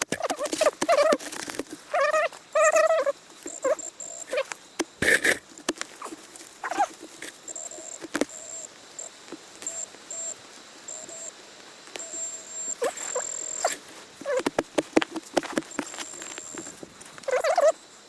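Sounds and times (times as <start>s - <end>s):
metal detector beeps: 3.4s - 4.4s, 7.5s - 11.3s, 12.0s - 13.8s, 15.6s - 17.7s
metal detector long tones: 3.4s - 4.5s, 7.4s - 11.3s, 12.0s - 13.8s, 15.6s - 17.7s.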